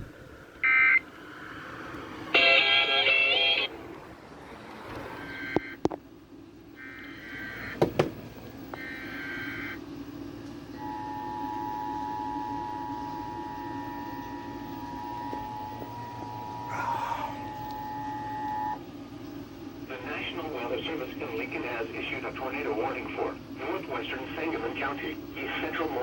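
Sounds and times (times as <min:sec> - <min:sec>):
two-tone attention signal: 0:10.8 - 0:16.7.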